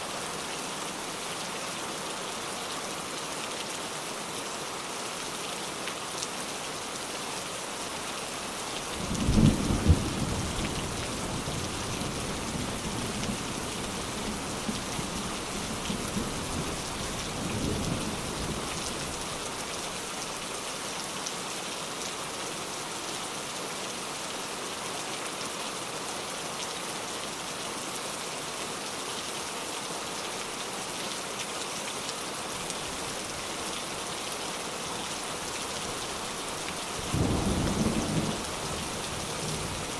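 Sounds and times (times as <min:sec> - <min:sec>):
heavy rain falling: 0:02.2 - 0:24.9, 0:28.5 - 0:39.9
thunder crack and rumble: 0:09.0 - 0:11.6.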